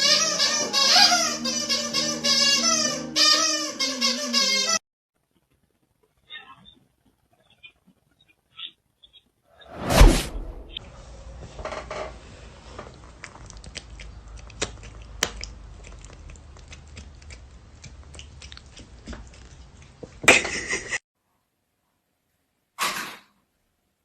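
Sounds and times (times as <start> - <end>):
pet chewing with crunches: 12.9 - 20.2.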